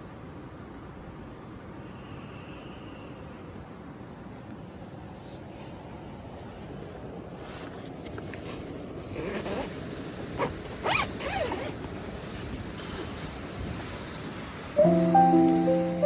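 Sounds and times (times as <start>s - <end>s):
zipper being pulled: 10.8s - 11.7s.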